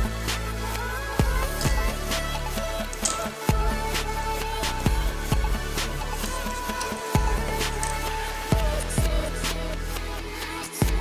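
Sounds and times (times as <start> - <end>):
electronic music with synth tones: 0.0 - 11.0
kick drum beat: 1.2 - 2.0, 3.5 - 3.9, 4.9 - 5.7, 7.2 - 7.8, 8.5 - 9.4.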